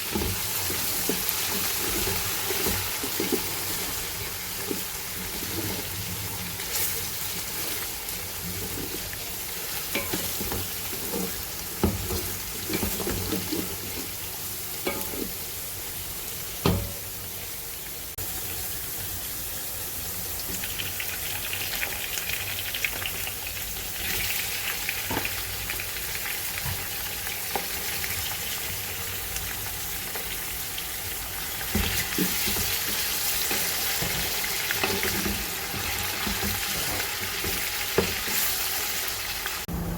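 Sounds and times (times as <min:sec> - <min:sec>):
food being stirred: 0:00.0 - 0:15.4, 0:31.3 - 0:39.0
food sizzling in oil: 0:00.0 - 0:39.7.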